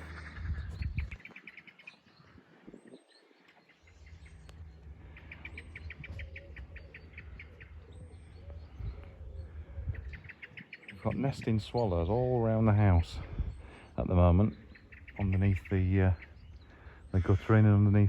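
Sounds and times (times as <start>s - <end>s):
low rumble: 0.0s - 1.2s, 3.8s - 10.4s
songbird twittering trills: 0.0s - 18.0s.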